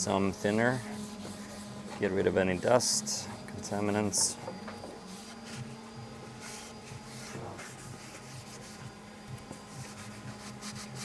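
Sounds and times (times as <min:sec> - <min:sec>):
rag rubbing on wood: 0:00.0 - 0:04.4, 0:05.0 - 0:05.8, 0:06.4 - 0:08.9.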